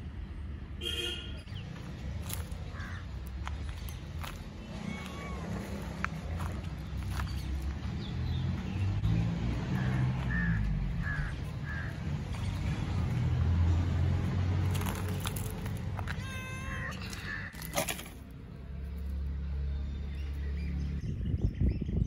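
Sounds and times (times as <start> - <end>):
cat meowing: 4.8 - 5.8, 16.0 - 17.5.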